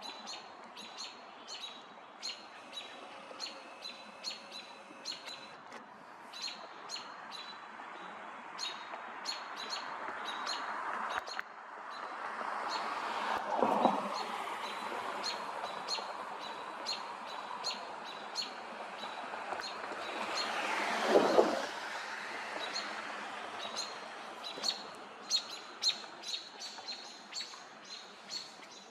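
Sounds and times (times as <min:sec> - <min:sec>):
small bird chirping: 0:00.0 - 0:05.5.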